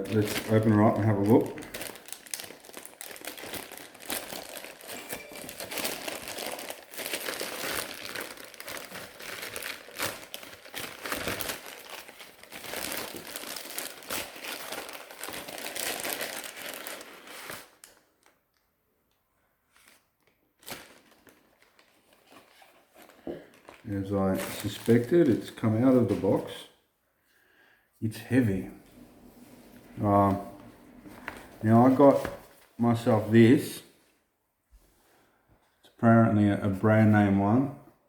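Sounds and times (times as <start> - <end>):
plastic bag crinkling: 0.0 - 18.4, 20.6 - 25.6, 28.7 - 33.4.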